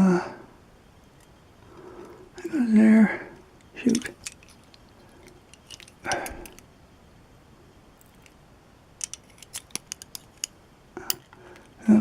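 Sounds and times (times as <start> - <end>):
lock parts clicking: 3.6 - 6.7, 9.0 - 11.8.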